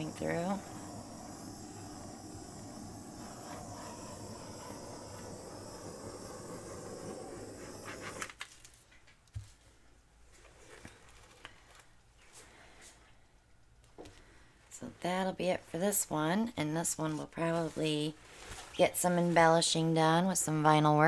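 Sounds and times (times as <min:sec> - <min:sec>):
butane torch hissing: 0:00.0 - 0:08.4.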